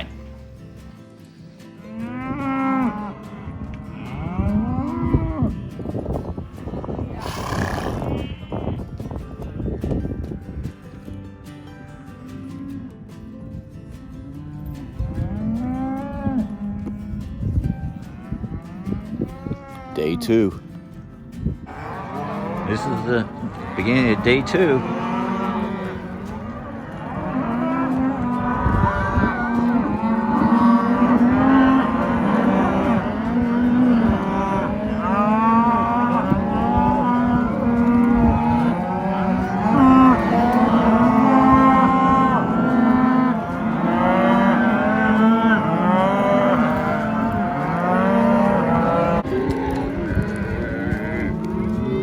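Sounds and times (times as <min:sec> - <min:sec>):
cattle mooing and bawling: 0:01.9 - 0:05.6, 0:07.0 - 0:08.8, 0:14.4 - 0:17.2, 0:18.1 - 0:20.2, 0:21.7 - 0:52.0.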